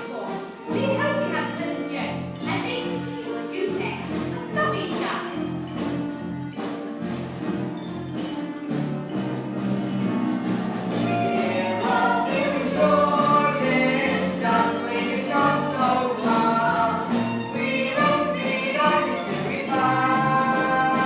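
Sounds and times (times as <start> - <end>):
instrumental accompaniment: 0.0 - 21.0
ensemble singing together: 10.9 - 21.0.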